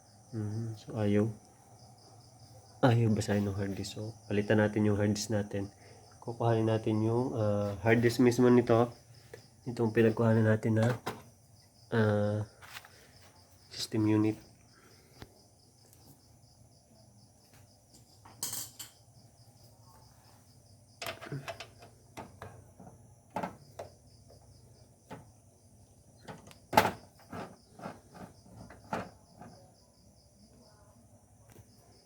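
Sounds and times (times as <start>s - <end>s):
crickets chirring: 0.0s - 32.0s
clicks and clatter on computer case: 10.8s - 11.3s, 21.0s - 24.0s, 26.2s - 29.6s.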